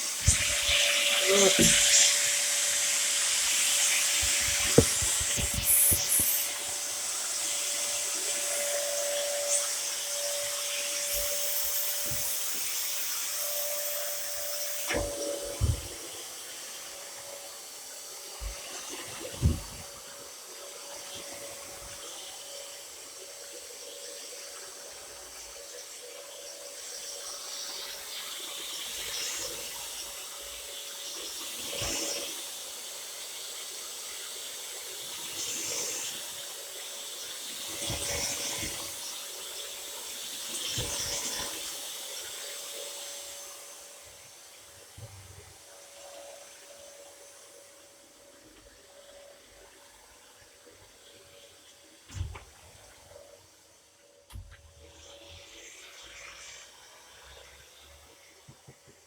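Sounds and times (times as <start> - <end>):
tap water running into sink: 0.1 - 6.8
short knocks and clunks: 4.2 - 6.3.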